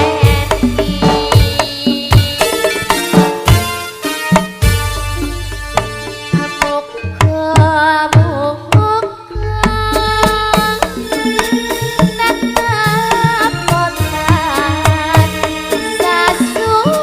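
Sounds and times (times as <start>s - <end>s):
hand-drum strokes: 0.0s - 17.0s
wavering melodic line: 9.2s - 14.8s.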